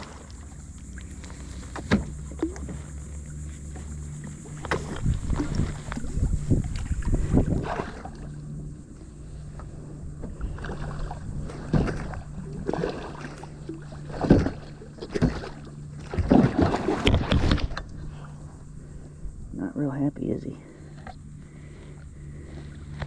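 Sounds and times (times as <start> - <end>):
water splashing against kayak hull: 0.0 - 19.4.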